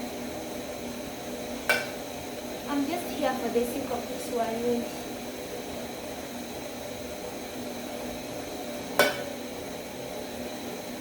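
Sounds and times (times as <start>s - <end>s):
food hissing in a pot: 0.0s - 11.0s
utensil clinking against pot: 9.0s - 9.3s.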